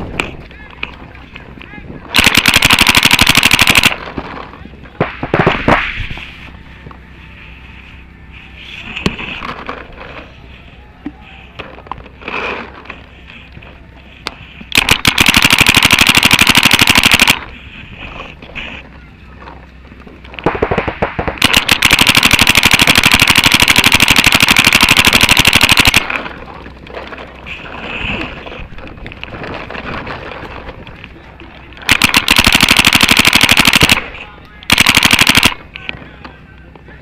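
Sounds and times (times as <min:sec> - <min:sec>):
paintball markers firing: 0:02.1 - 0:06.0, 0:14.3 - 0:17.5, 0:20.4 - 0:26.4, 0:31.8 - 0:35.9.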